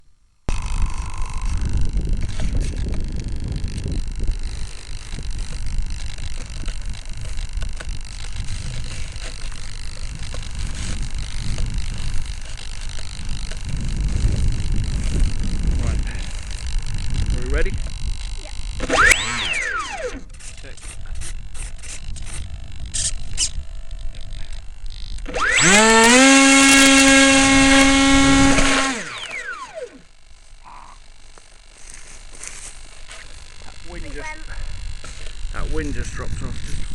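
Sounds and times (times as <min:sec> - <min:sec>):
wind buffeting microphone: 0:00.5 - 0:29.8, 0:33.4 - 0:36.9
electric propeller motor whine: 0:00.5 - 0:36.9.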